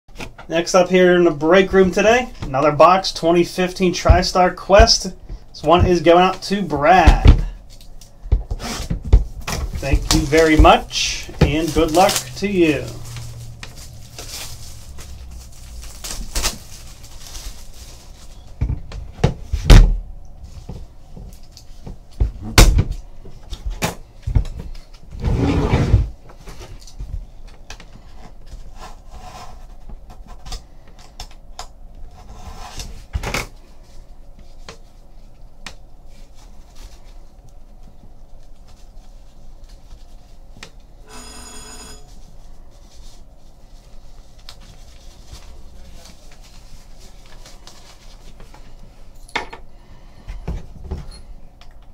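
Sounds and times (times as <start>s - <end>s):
rough scraping or tearing: 9.8s - 18.2s.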